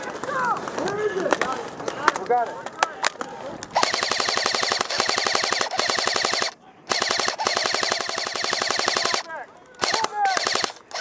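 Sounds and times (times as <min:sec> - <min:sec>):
airsoft rifle firing bursts: 0:03.7 - 0:11.0.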